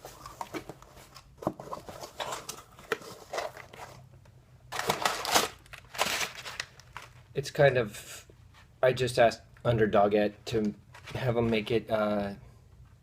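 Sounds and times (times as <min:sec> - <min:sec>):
packaging rustling and crinkling: 0:00.0 - 0:04.0, 0:04.7 - 0:07.3.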